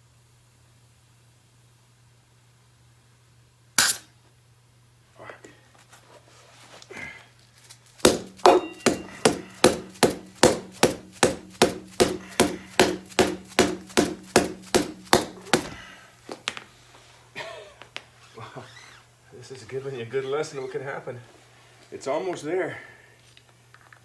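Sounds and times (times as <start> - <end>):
hammer blows: 8.0 - 15.9.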